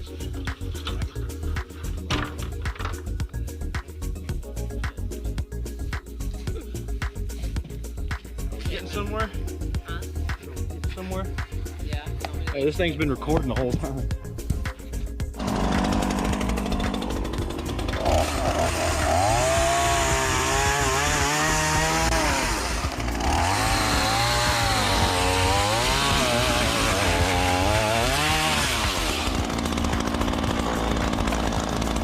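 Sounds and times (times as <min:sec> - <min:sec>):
chainsaw cutting wood: 0:15.4 - 0:32.0.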